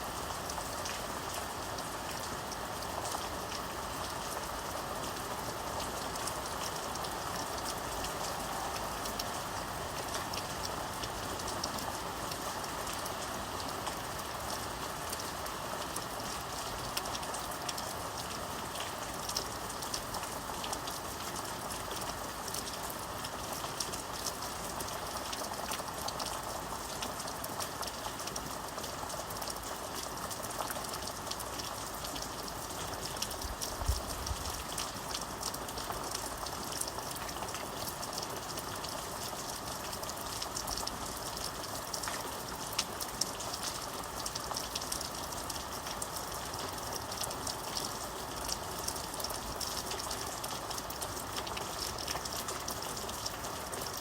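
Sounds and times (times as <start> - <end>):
rain falling: 0.0 - 54.0.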